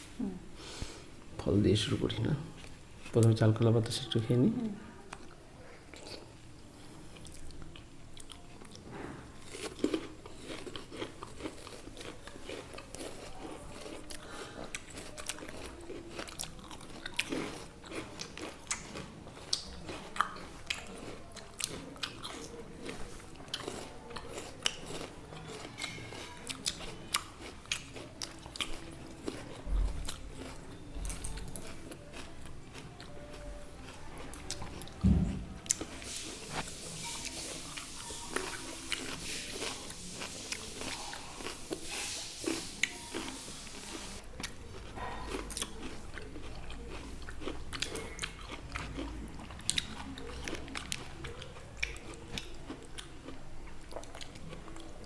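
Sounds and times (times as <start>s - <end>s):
close-up chewing and crunching: 5.0s - 55.0s
low thumps: 35.0s - 35.6s.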